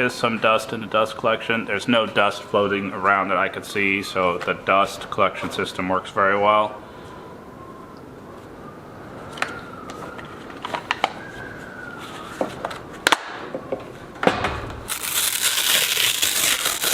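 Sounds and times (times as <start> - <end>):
faint wavering whine: 0.0 - 13.0.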